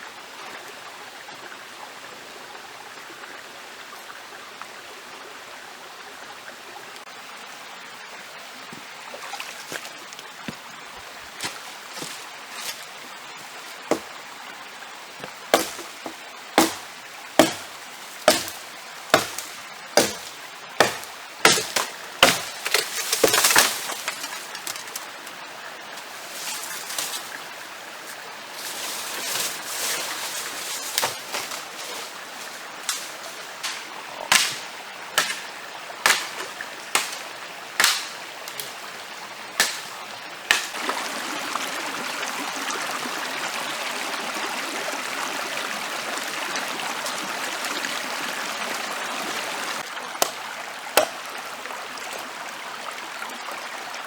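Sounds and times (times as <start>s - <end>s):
stream rushing: 3.4s - 54.0s
chopping wood: 13.9s - 14.1s, 15.2s - 25.0s, 30.9s - 31.6s, 32.8s - 38.7s, 39.6s - 39.9s, 40.5s - 41.0s, 50.2s - 50.4s, 51.0s - 51.3s.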